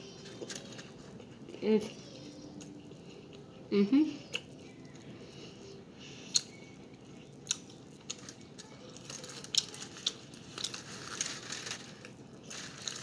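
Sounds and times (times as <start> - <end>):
chewing with wet mouth smacks: 6.3 - 10.8.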